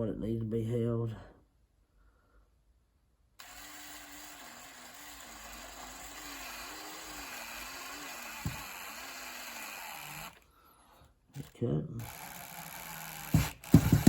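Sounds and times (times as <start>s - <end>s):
power drill motor whine: 3.4s - 10.5s, 12.0s - 14.0s.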